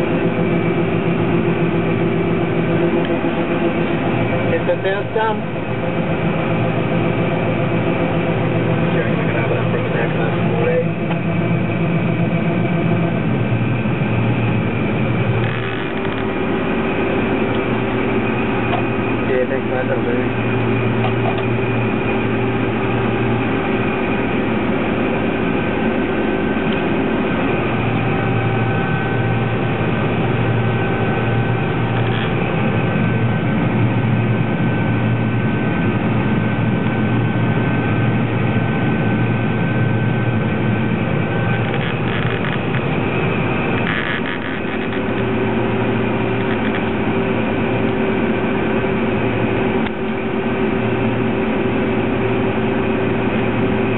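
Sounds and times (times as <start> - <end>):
combine harvester drone: 0.0 - 53.9
thin high whine: 0.0 - 53.9.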